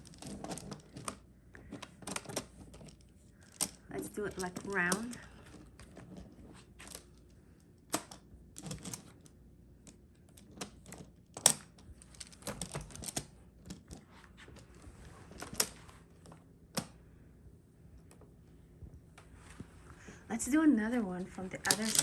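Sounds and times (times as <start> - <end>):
plastic building tiles clicking: 21.6 - 22.0.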